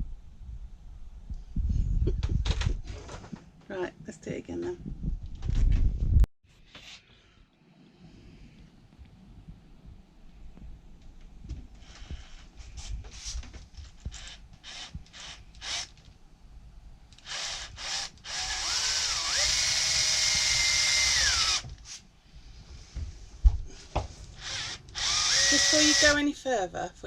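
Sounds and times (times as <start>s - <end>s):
power drill boring into steel: 14.1s - 15.9s, 17.2s - 21.7s, 24.4s - 26.2s.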